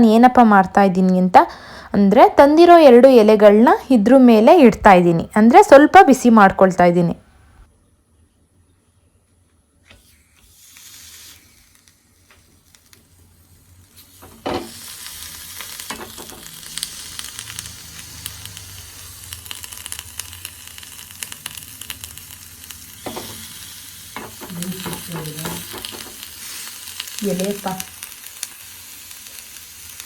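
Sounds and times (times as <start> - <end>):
leaves sizzling on a hot pan: 9.9 - 30.0.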